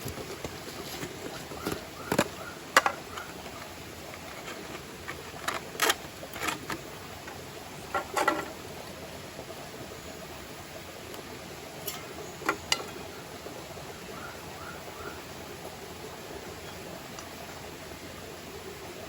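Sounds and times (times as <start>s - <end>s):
background hiss: 0.0s - 19.0s
sharp clicks and knocks: 1.6s - 8.6s.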